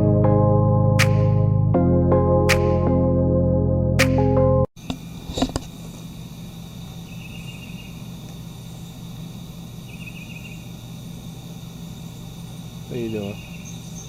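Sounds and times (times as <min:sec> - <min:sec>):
insects buzzing: 0:04.8 - 0:14.0
raspy chirping bursts: 0:12.0 - 0:14.0.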